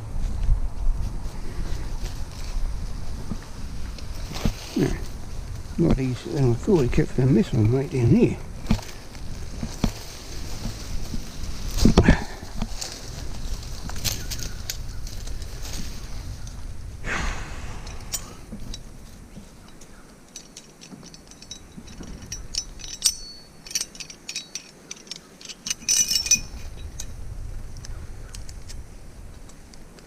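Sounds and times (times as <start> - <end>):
small metal clinks and jingles: 4.0 - 16.0, 17.8 - 27.3.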